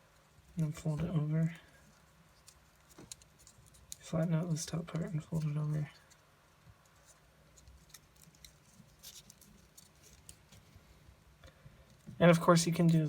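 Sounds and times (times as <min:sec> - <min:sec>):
paper rustling and crinkling: 0:00.2 - 0:06.2, 0:06.8 - 0:10.8.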